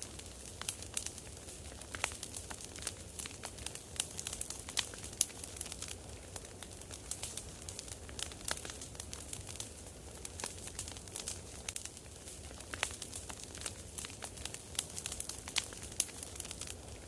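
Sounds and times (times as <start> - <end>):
campfire crackling: 0.0 - 17.0.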